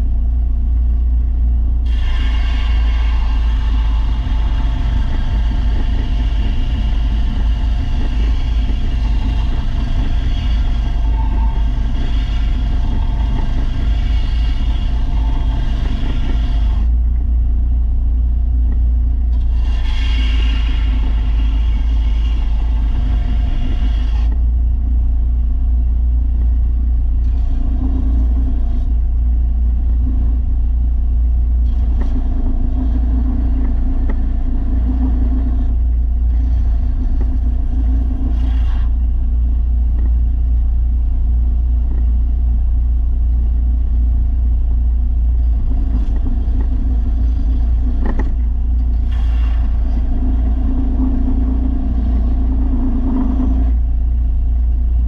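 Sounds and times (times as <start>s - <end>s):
belt sander motor drone: 1.8s - 17.4s, 19.2s - 24.5s, 31.6s - 40.2s, 45.3s - 55.0s.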